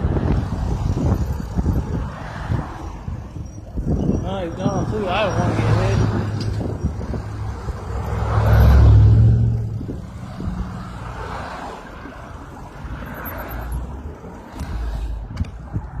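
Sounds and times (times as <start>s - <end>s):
car passing close by: 7.4s - 12.0s.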